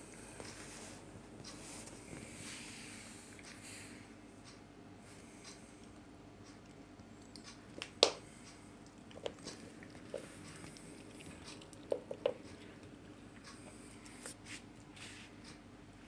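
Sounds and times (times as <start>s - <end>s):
cat chewing crunchy treat: 5.4s - 14.3s.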